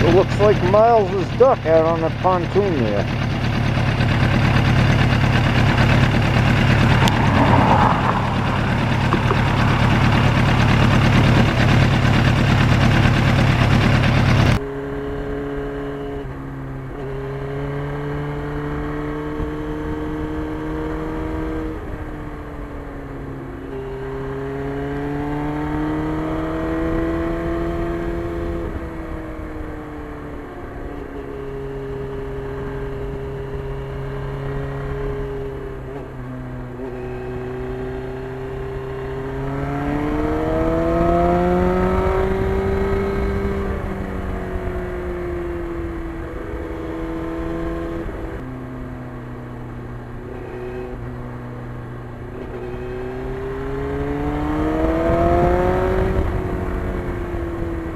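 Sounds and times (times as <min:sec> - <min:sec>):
motorcycle engine running: 0:00.0 - 0:57.9
low rushing noise: 0:05.3 - 0:13.4.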